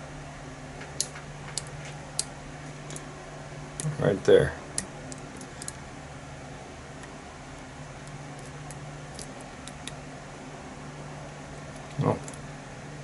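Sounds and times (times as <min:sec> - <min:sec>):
low hum: 0:00.0 - 0:13.0
lock-picking tools clicking: 0:08.0 - 0:10.0.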